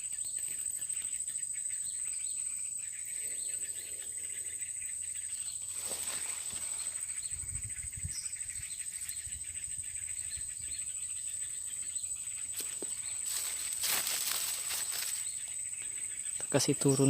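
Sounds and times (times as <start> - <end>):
high insect trill: 0.0 - 17.0
rustling hiss: 12.5 - 15.4.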